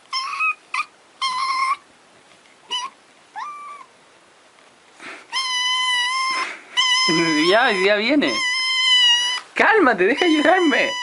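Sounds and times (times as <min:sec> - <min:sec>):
kitten meowing: 0:00.1 - 0:01.8, 0:02.7 - 0:03.9, 0:05.3 - 0:11.0.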